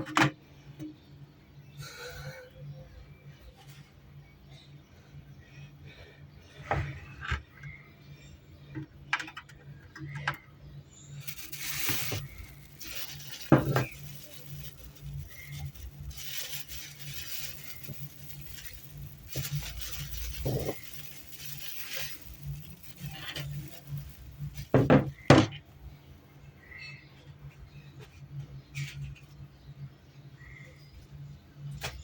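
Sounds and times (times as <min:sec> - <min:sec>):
small hard objects clicking: 0:11.2 - 0:24.9
rustling and scraping: 0:11.2 - 0:25.3.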